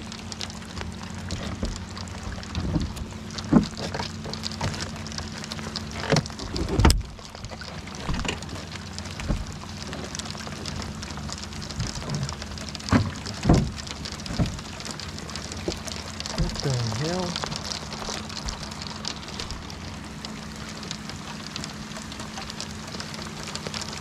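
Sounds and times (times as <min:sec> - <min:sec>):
low steady hum: 0:00.0 - 0:24.0
rain falling: 0:00.0 - 0:24.0
knocks and thuds: 0:02.5 - 0:03.9, 0:09.2 - 0:09.5, 0:12.9 - 0:14.6.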